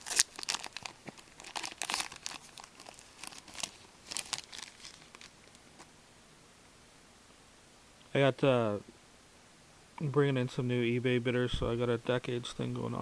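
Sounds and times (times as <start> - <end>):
foil wrapper crinkling: 0.0 - 5.9.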